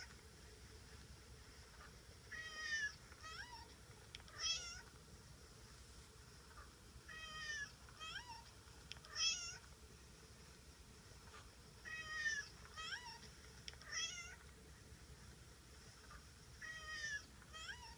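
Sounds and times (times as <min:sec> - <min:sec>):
cat meowing: 0:04.3 - 0:04.8, 0:09.1 - 0:09.6, 0:13.8 - 0:14.4, 0:16.6 - 0:17.9.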